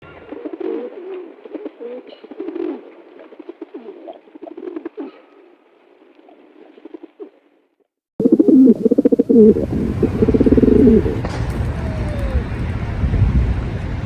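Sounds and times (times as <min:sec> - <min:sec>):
pigeons cooing: 0:00.3 - 0:02.9, 0:08.2 - 0:11.2.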